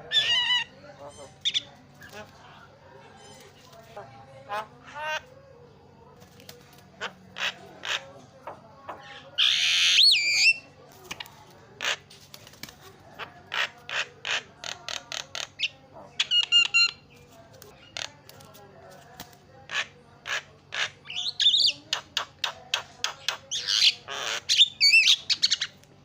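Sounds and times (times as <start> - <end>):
myna chattering calls: 0.0 - 2.5, 6.7 - 12.3, 13.1 - 18.4, 19.6 - 25.8.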